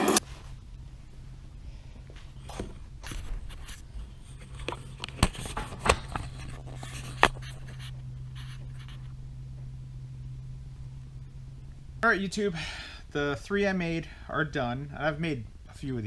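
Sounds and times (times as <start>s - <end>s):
light scraping: 0.0s - 0.3s
steady low hum: 0.0s - 16.0s.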